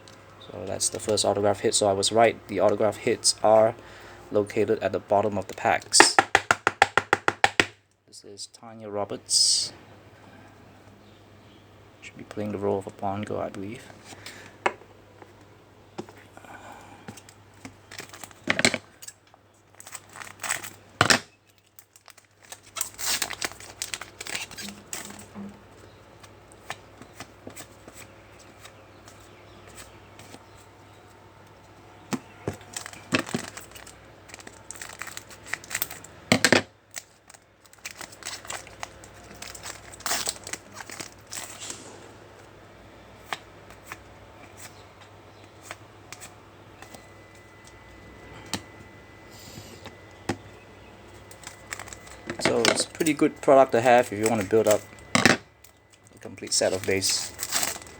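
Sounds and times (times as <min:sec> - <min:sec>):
card pack wrappers tearing: 0:19.7 - 0:25.3, 0:32.4 - 0:36.2, 0:36.9 - 0:42.0, 0:51.2 - 0:55.1, 0:56.2 - 0:57.9.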